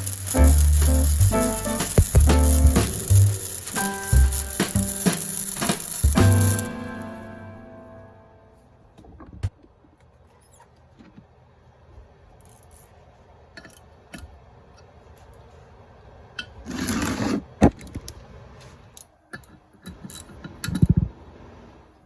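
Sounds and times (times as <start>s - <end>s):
harsh noisy burst: 0.0s - 7.5s.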